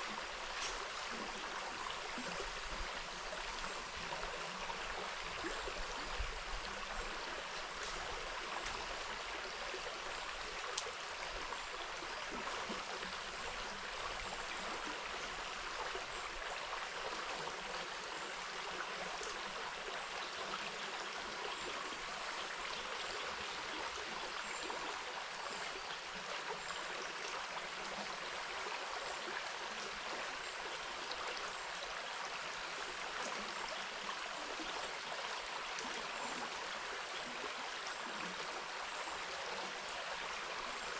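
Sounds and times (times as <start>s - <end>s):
faint ticks: 10.7s - 11.0s, 19.2s - 19.5s.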